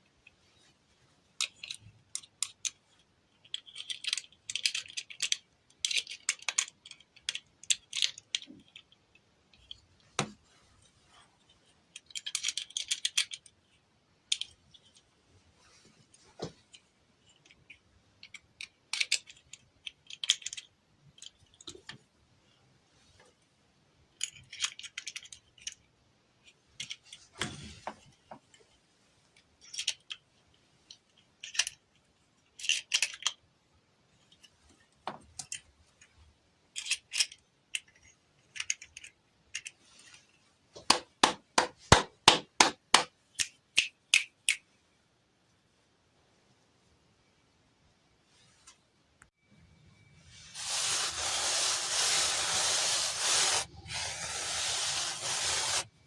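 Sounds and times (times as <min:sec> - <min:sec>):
rustling and crinkling: 0:14.4 - 0:18.4, 0:50.3 - 0:56.0.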